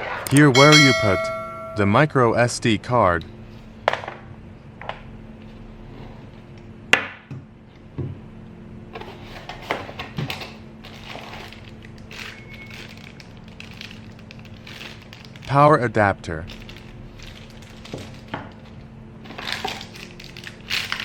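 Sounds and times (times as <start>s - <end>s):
packaging rustling and crinkling: 10.9s - 15.5s.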